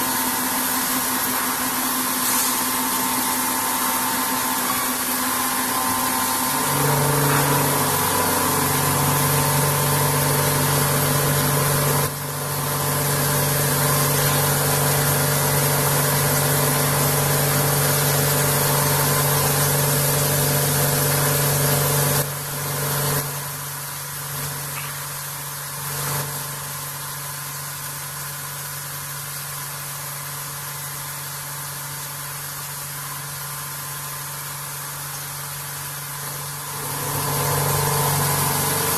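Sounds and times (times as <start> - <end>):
machining hiss: 0.0 - 22.2
milling machine drone: 0.0 - 23.3, 36.2 - 38.9.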